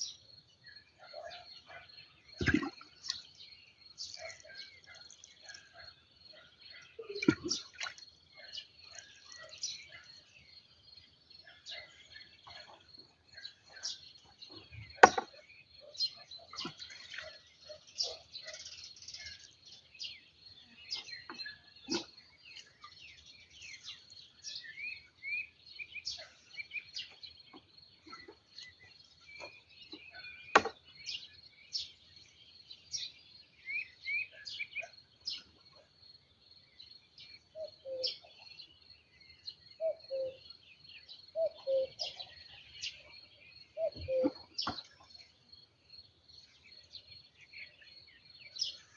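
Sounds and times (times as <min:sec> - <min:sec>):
small birds chirping: 0:00.0 - 0:48.9
sharp knocks: 0:15.0 - 0:15.3, 0:30.6 - 0:30.8.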